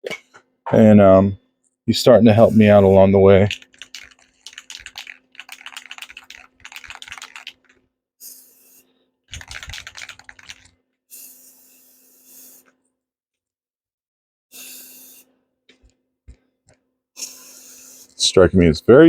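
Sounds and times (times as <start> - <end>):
spray can rattling: 2.4 - 7.8, 9.3 - 10.7.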